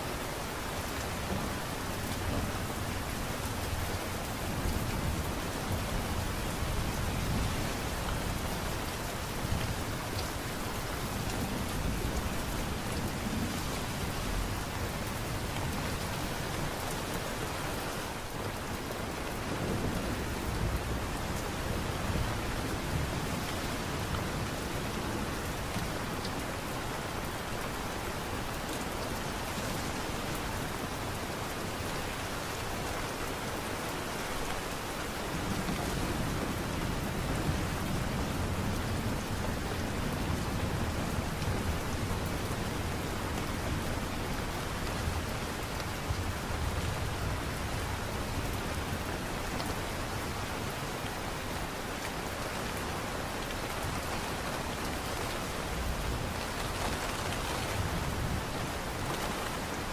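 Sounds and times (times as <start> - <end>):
light rain: 0.0 - 59.9.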